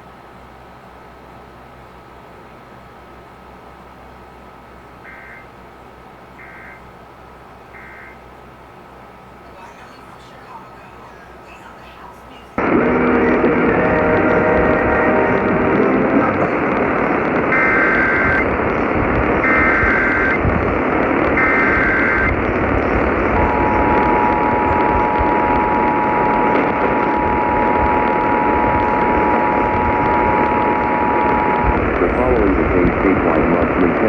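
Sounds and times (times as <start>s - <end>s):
radio static hiss: 1.2s - 34.0s
warbling data bursts: 5.0s - 5.5s, 6.4s - 6.9s, 7.7s - 8.3s, 9.5s - 32.9s
two-tone attention signal: 7.8s - 8.2s, 23.4s - 31.6s.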